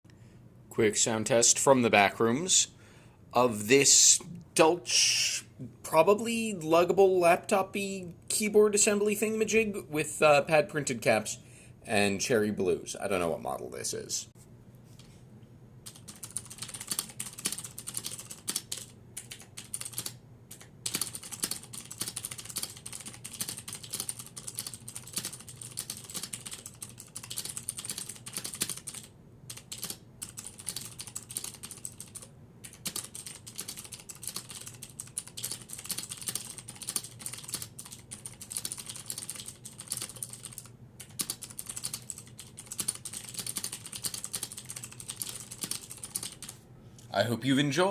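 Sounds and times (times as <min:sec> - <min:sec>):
clicky keyboard typing: 0:15.8 - 0:46.6.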